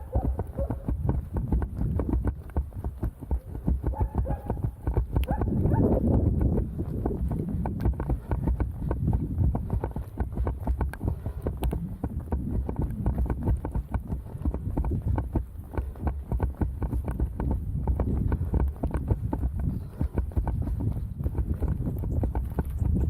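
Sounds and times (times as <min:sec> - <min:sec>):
running footsteps crunching in snow: 0:00.0 - 0:23.0
wind rumble on microphone: 0:00.0 - 0:23.0.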